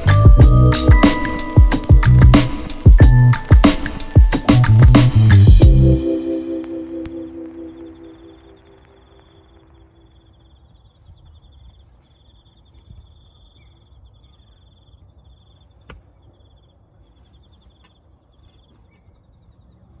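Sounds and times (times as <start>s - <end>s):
crickets chirping: 5.8s - 16.9s.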